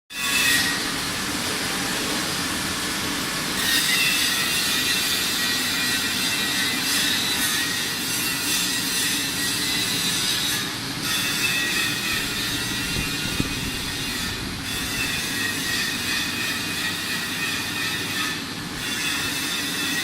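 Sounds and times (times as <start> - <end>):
ice machine hum and hiss: 0.1 - 20.0.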